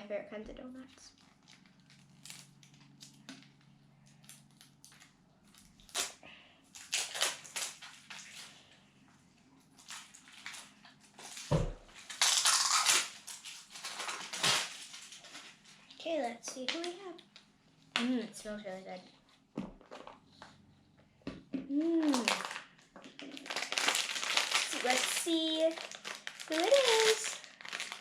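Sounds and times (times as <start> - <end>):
plastic packaging crinkling: 0.8 - 8.8, 9.7 - 17.4, 21.9 - 28.0.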